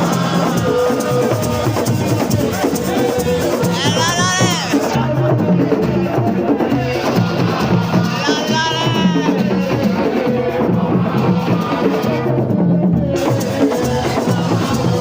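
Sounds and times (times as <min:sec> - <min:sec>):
person singing: 0:00.0 - 0:10.8
drums playing steady rhythm: 0:00.0 - 0:15.0.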